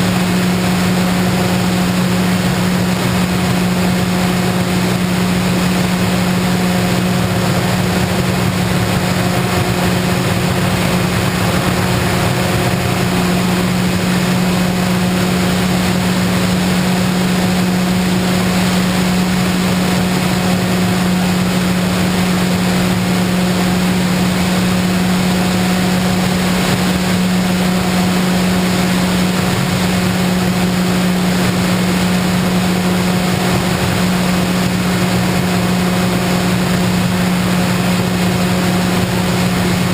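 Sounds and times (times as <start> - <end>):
model plane motor humming: 0.0 - 39.9
rush of air: 0.0 - 39.9.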